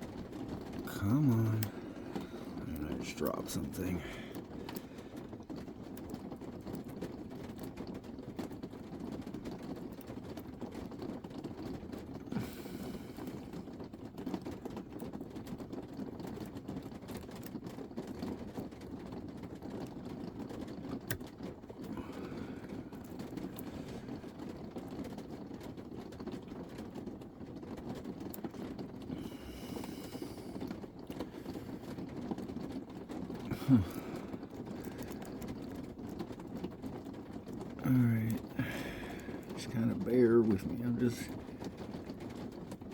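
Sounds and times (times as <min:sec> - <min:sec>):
low background hum: 0:00.0 - 0:42.9.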